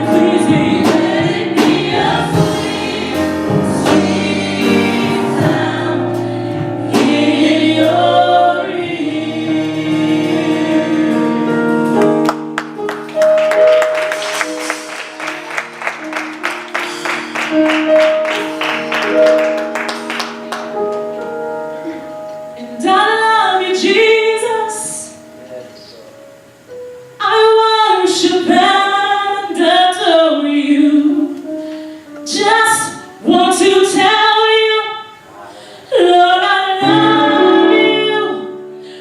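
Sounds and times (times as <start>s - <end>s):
women singing gospel: 0.0s - 11.7s, 22.5s - 25.2s, 27.2s - 31.5s, 32.3s - 39.0s.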